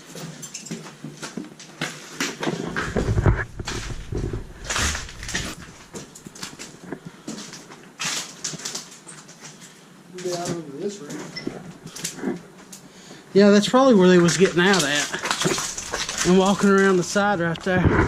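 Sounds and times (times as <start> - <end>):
footsteps walking up stairs: 2.5 - 7.5.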